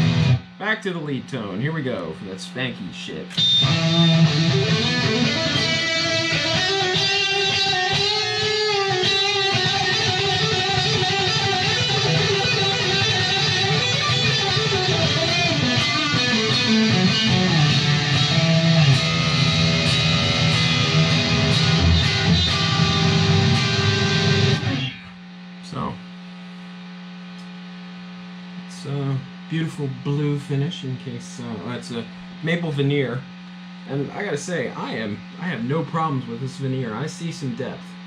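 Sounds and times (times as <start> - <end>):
distorted electric guitar lead: 0.0 - 0.7, 3.3 - 25.3.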